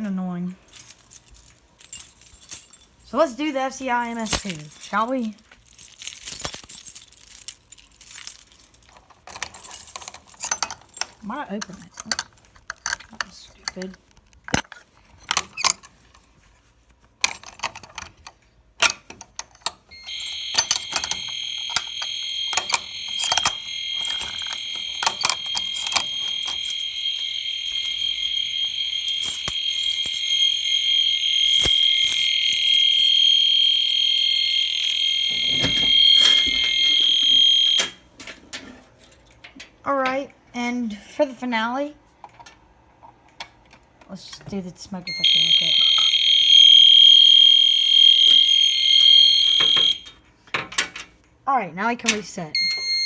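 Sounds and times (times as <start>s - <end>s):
fire alarm pull station clicks: 18.8s - 38.4s, 45.1s - 50.2s
fire alarm high-pitched tone: 19.9s - 38.0s, 45.1s - 50.2s, 52.6s - 53.0s.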